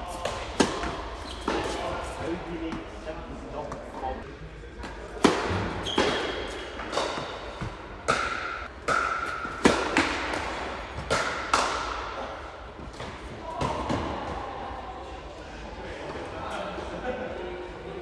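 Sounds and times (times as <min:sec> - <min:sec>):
tennis ball bouncing on court: 0:04.8 - 0:12.0
tennis ball hit by racket: 0:05.2 - 0:12.0.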